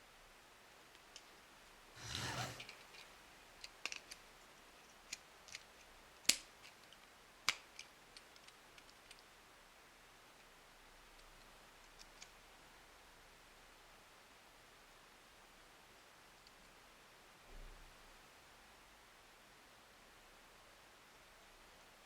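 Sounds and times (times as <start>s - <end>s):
plastic toy pieces clicking: 3.6s - 4.2s.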